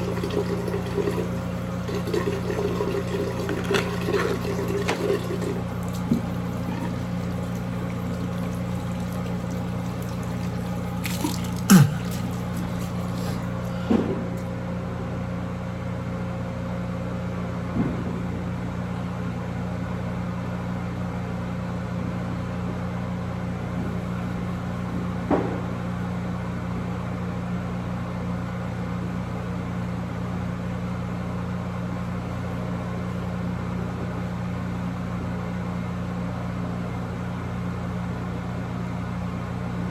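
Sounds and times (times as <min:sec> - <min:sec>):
low mechanical hum: 0:00.0 - 0:39.9.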